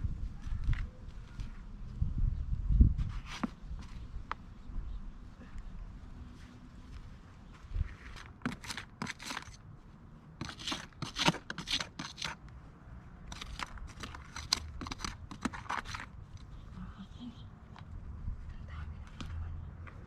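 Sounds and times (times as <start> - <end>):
hands digging through soil: 6.0 - 12.5, 13.2 - 16.7
roots tearing loose: 7.8 - 9.6.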